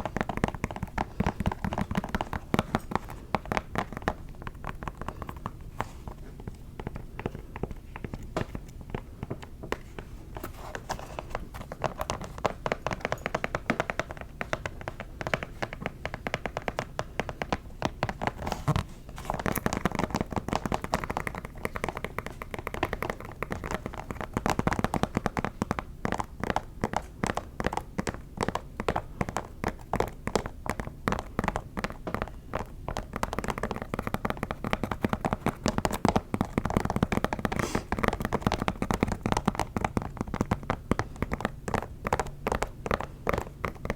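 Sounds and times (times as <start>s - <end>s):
rapid tapping on a shoe: 0.0s - 43.9s.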